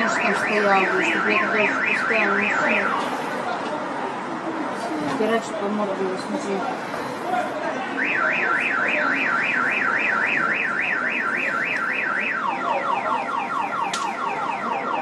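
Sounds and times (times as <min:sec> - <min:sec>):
car alarm siren: 0:00.0 - 0:03.2, 0:07.9 - 0:15.0.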